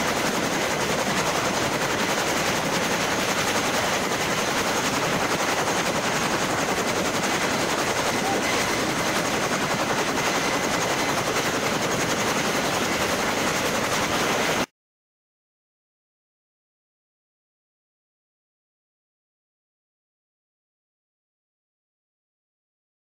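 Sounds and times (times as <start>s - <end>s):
helicopter rotor chopping: 0.0s - 14.7s
high-pitched whine: 7.9s - 11.2s.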